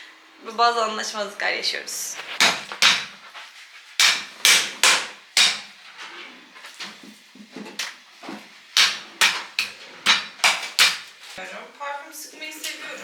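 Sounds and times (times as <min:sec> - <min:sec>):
pounding on a hard work surface: 0:02.4 - 0:03.2, 0:04.0 - 0:05.8, 0:08.8 - 0:11.1.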